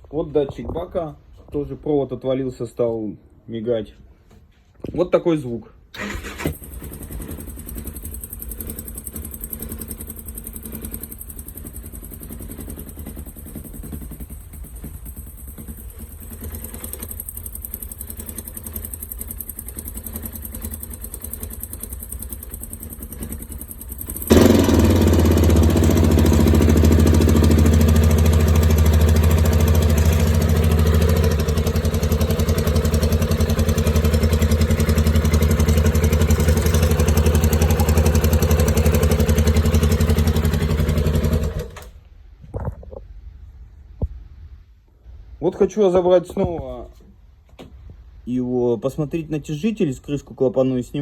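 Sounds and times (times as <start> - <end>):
motorcycle engine idling: 6.0 - 41.8.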